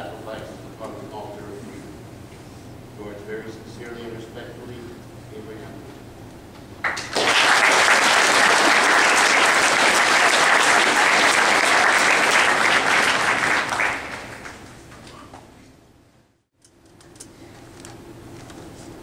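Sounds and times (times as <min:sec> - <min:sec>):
audience applauding: 0:06.8 - 0:15.0.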